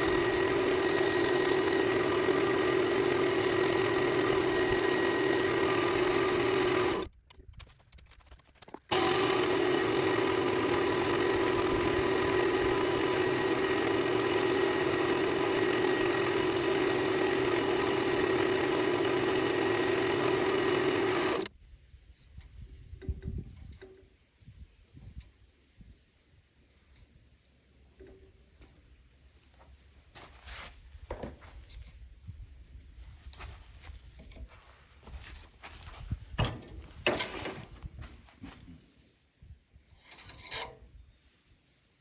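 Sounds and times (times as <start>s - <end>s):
wood lathe motor humming: 0.0s - 7.1s, 8.9s - 21.5s.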